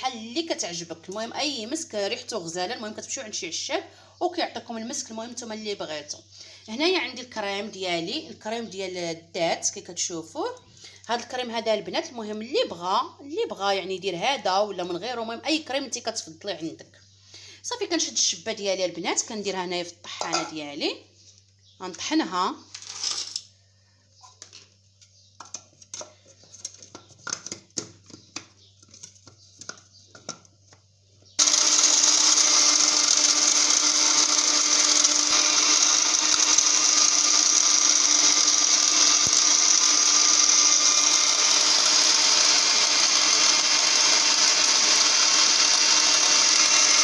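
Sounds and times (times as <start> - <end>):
electric grinder running: 31.4 - 47.0.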